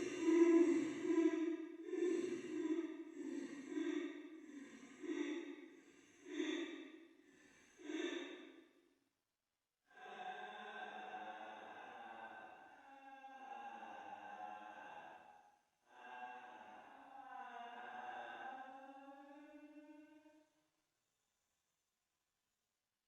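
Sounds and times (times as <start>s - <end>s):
woman sobbing: 0.0s - 2.9s.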